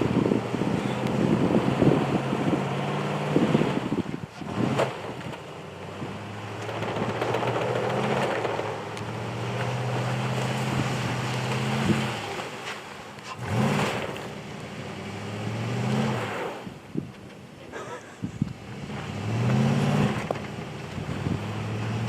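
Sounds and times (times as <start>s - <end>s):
pickup truck engine running: 0.0s - 16.1s.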